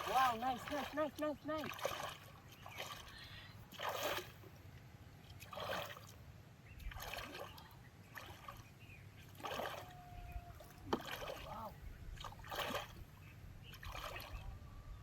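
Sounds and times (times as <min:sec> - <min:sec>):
water splashing: 0:00.0 - 0:04.6, 0:05.3 - 0:14.5.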